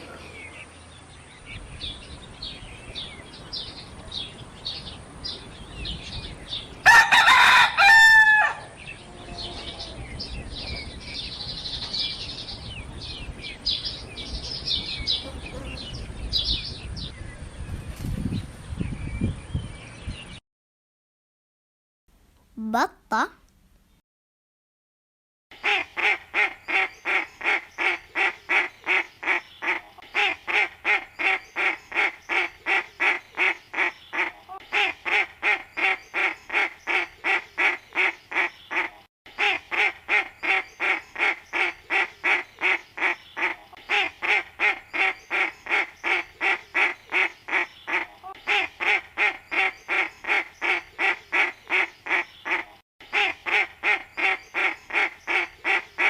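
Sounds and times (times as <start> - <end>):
duck quacking: 25.6 - 56.0.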